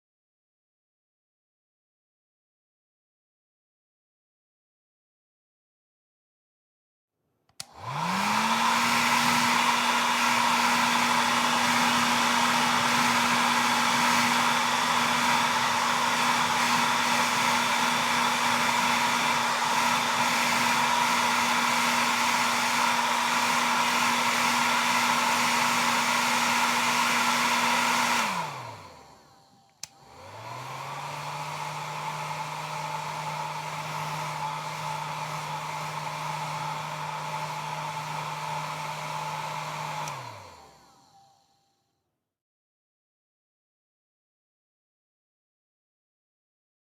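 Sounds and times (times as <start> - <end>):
hair dryer switch click: 7.5 - 9.8, 29.7 - 30.1, 39.8 - 40.3
hair dryer blowing: 7.6 - 41.5.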